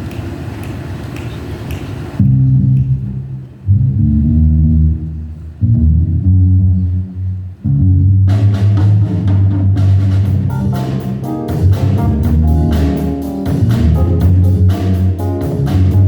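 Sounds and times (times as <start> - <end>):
drum kit with cymbals: 8.3 - 16.0.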